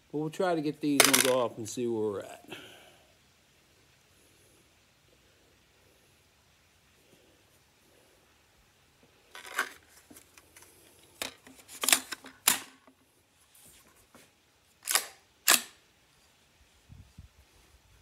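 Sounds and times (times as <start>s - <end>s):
rifle action metallic clacks: 1.0s - 1.4s, 11.8s - 12.8s, 14.8s - 15.8s.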